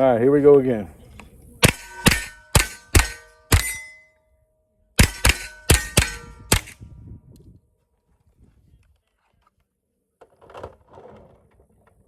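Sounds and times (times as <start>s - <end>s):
rifle shots: 1.6s - 3.8s, 5.0s - 6.8s
steel plates ringing: 1.7s - 4.2s, 5.0s - 6.6s.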